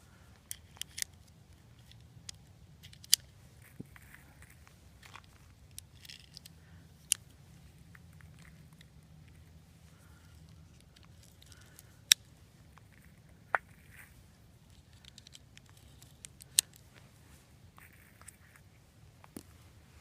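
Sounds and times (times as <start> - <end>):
cartridges clicking into magazine: 0.5 - 3.3.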